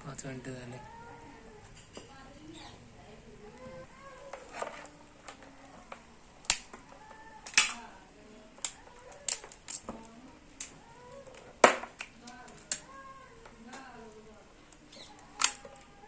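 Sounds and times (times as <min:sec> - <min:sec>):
sharp clicks and snaps: 0:05.3 - 0:06.8, 0:07.4 - 0:07.9, 0:08.6 - 0:14.0, 0:14.7 - 0:15.9.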